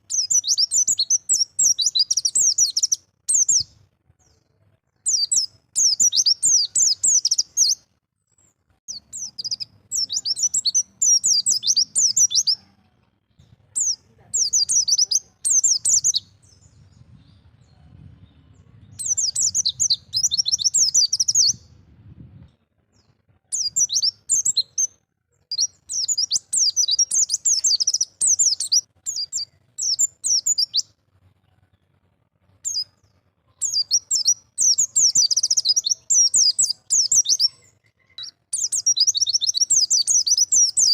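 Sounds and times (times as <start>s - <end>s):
bird rapid high twittering: 0.0s - 3.8s, 5.1s - 7.8s, 8.9s - 12.6s, 13.8s - 16.8s, 18.9s - 21.7s, 23.5s - 24.9s, 25.5s - 30.9s, 33.6s - 40.9s.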